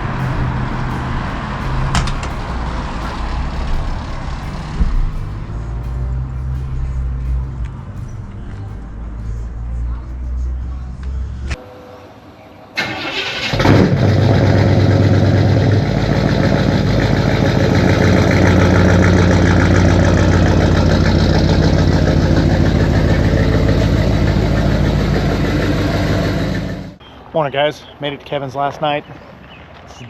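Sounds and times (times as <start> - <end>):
car engine starting and running: 0.0 - 11.6, 12.8 - 27.0.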